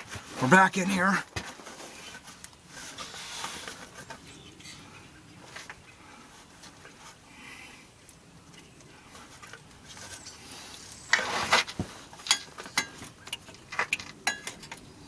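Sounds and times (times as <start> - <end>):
short rustle: 9.0 - 12.6.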